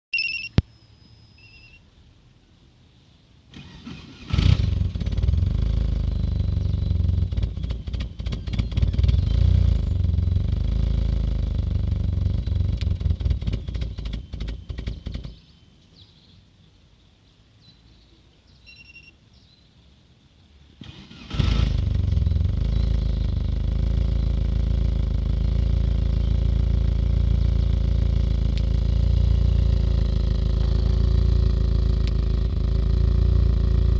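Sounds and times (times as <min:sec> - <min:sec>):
car engine cranking and starting: 0:03.5 - 0:15.5, 0:20.8 - 0:33.9
misfiring car engine running: 0:03.6 - 0:15.5, 0:20.8 - 0:33.9.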